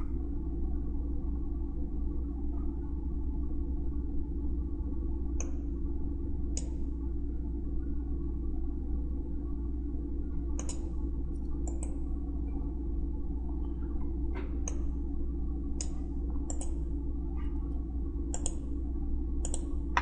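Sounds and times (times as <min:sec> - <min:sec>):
steady low hum: 0:00.0 - 0:20.0
computer mouse clicking: 0:10.6 - 0:10.9, 0:11.6 - 0:12.0, 0:15.8 - 0:16.8, 0:18.3 - 0:18.6, 0:19.4 - 0:19.7.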